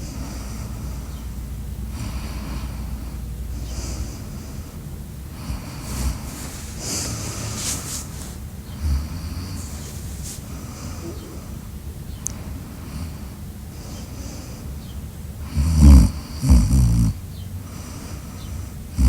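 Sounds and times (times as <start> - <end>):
person snoring: 5.4 - 11.6, 15.4 - 17.2.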